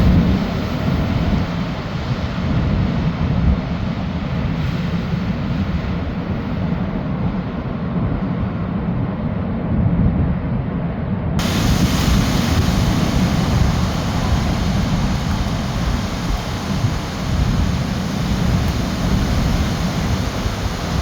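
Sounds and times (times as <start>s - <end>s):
wind buffeting microphone: 0.0s - 10.6s, 11.4s - 21.0s
heavy surf: 11.4s - 21.0s.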